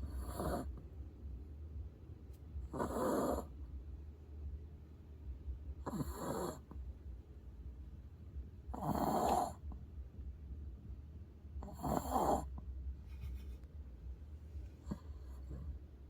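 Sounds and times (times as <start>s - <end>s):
dog snoring: 0.0s - 0.8s, 2.6s - 3.6s, 5.8s - 6.8s, 8.7s - 9.7s, 11.6s - 12.6s, 14.8s - 15.8s.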